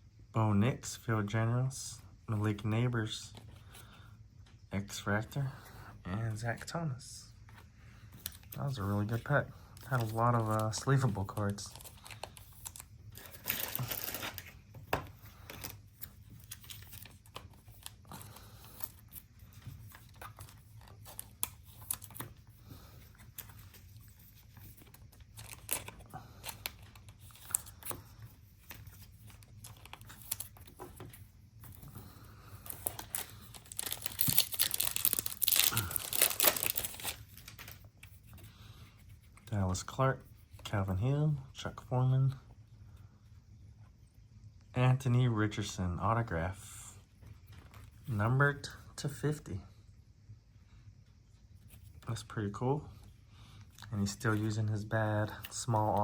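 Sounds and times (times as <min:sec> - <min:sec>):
wrapper crinkling: 0:09.9 - 0:14.6, 0:24.9 - 0:27.9, 0:32.6 - 0:37.8
wrapper tearing: 0:12.7 - 0:14.5, 0:32.7 - 0:37.7.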